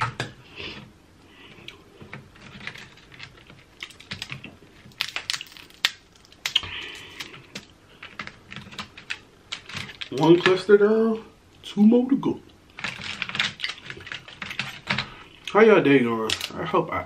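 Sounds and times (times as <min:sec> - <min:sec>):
crab shell cracking: 0:03.3 - 0:10.3.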